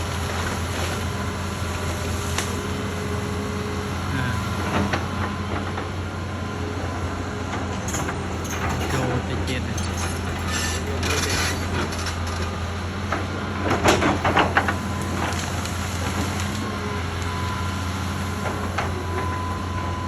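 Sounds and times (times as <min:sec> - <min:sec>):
excavator diesel engine running: 0:00.0 - 0:20.0.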